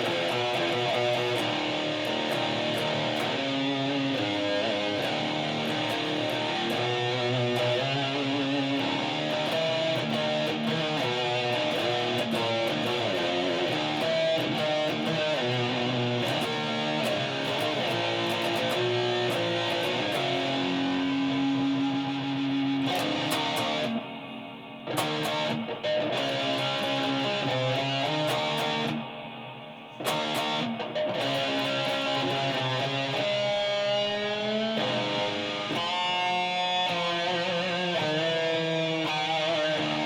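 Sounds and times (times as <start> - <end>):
guitar playing rock riffs: 0.0 - 40.0.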